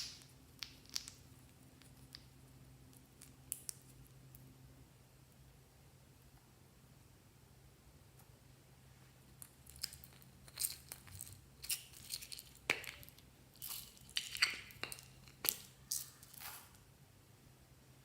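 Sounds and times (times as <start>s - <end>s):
slime crackling and popping: 0.0s - 2.3s
faint low hum: 0.0s - 18.0s.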